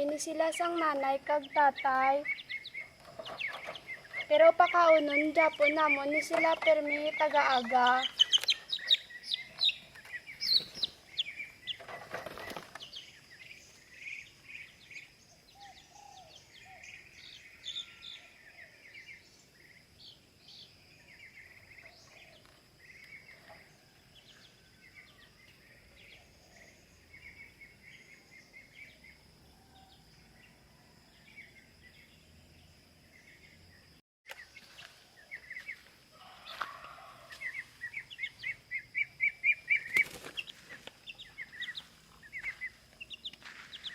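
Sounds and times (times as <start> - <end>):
chicks peeping: 0.1 - 13.4, 36.4 - 43.9.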